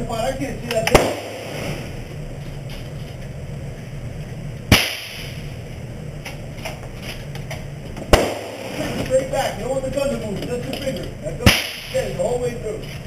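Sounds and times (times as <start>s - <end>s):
low hum: 0.0s - 13.0s
gunshot: 0.9s - 1.9s, 4.7s - 5.4s, 8.1s - 9.0s, 11.5s - 12.0s.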